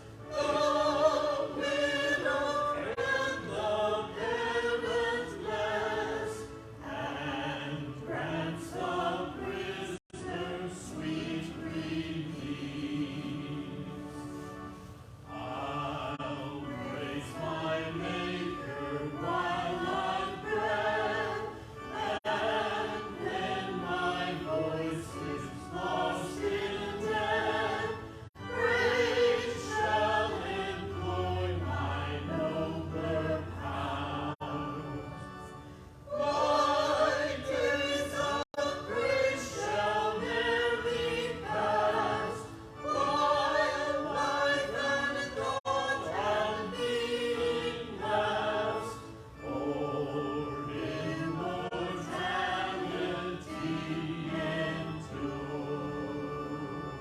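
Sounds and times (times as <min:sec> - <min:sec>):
church choir singing: 0:00.0 - 0:57.0.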